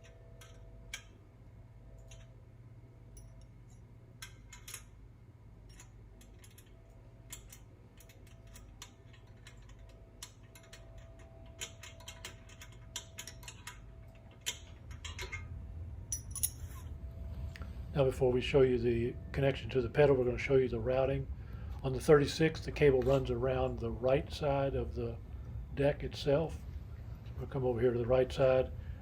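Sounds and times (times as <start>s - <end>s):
hand tools clicking on metal: 5.7s - 15.5s.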